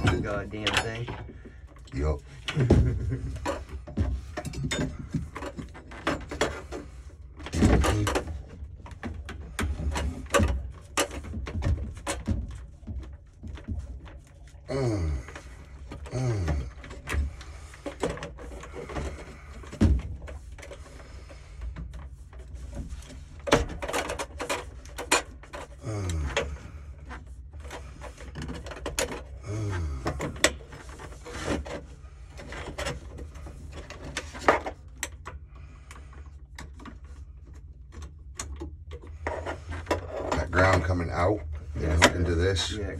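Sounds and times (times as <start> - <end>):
tools clicking and knocking: 0.0 - 14.7.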